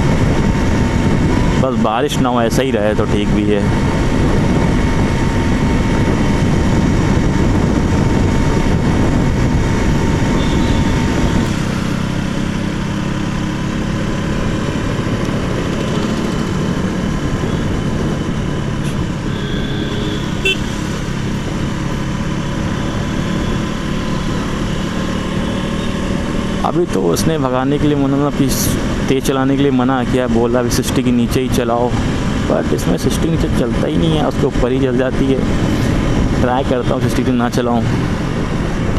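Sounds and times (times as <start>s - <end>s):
motorcycle engine running: 0.0s - 36.9s
horn toot: 10.3s - 11.9s, 18.8s - 21.0s.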